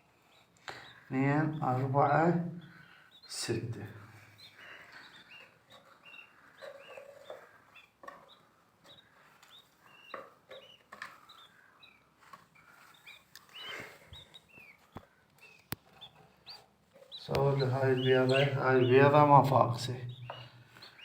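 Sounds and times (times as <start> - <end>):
lovebirds chirping: 0.0 - 21.0.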